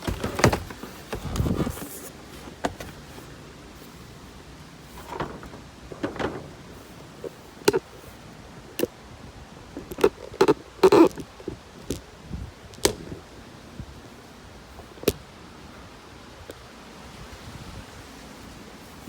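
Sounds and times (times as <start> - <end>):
cardboard box rustling and knocks: 0.0 - 3.9.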